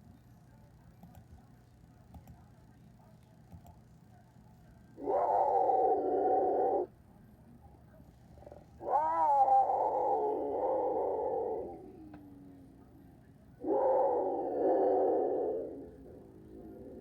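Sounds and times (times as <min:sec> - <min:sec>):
jaguar calling: 0:05.0 - 0:06.9, 0:08.8 - 0:11.9.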